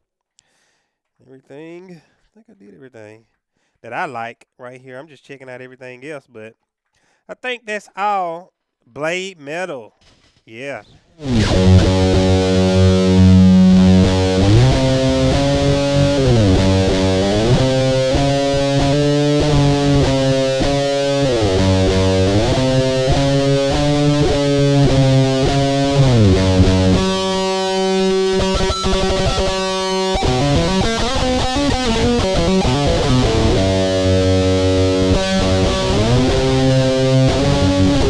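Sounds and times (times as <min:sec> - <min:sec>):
distorted electric guitar: 0:10.5 - 0:38.0.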